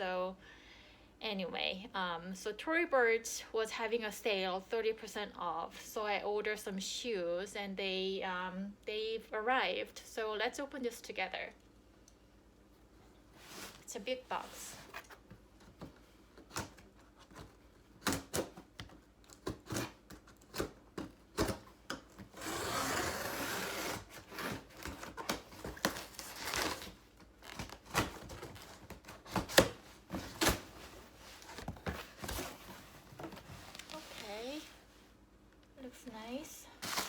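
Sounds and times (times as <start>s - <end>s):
cardboard box rustling and scraping: 30.0s - 34.7s.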